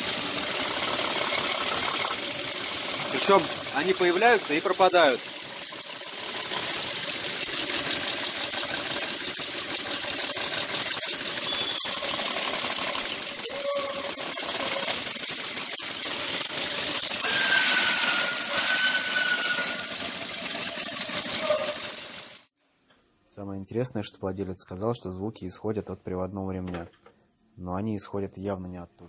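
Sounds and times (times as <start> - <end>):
engine ticking and clattering: 0.0 - 13.5, 14.1 - 17.4, 19.4 - 22.5.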